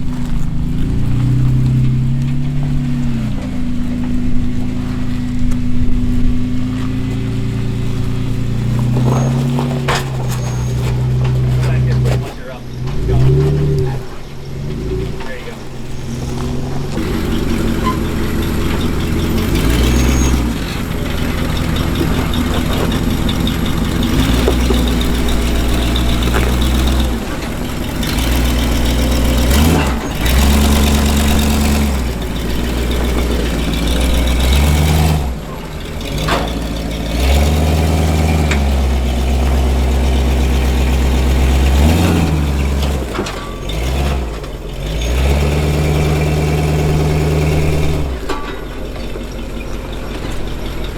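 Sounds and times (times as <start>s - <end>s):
engine revving: 0.0s - 50.9s.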